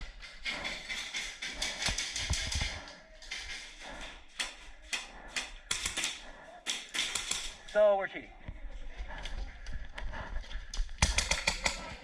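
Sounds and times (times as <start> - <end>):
sharp clicks and knocks: 0.0 - 7.7, 10.7 - 12.0.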